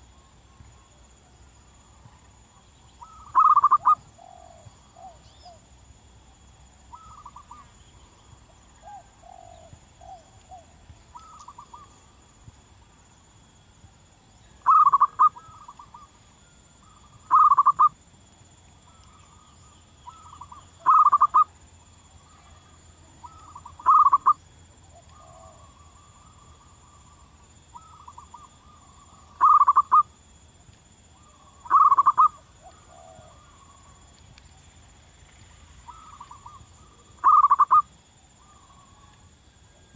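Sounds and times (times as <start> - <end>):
faint bird calls: 0.0 - 5.7, 6.8 - 12.3, 14.4 - 18.0, 18.7 - 30.2, 31.2 - 34.0, 35.7 - 39.9
dove cooing: 3.0 - 5.6, 8.8 - 11.9, 14.6 - 16.1, 17.2 - 17.9, 20.1 - 21.4, 23.2 - 27.0, 27.8 - 30.1, 31.2 - 33.7, 35.9 - 37.8.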